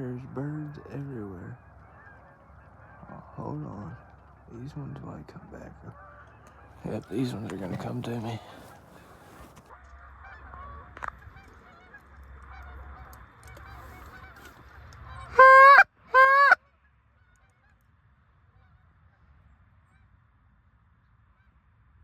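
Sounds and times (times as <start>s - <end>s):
goose call honks: 0.0s - 4.7s, 5.3s - 16.6s
geese honking faintly: 0.0s - 17.8s.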